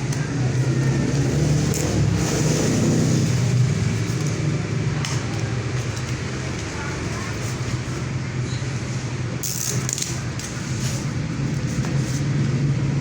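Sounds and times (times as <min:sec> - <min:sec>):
engine running: 0:00.0 - 0:08.4.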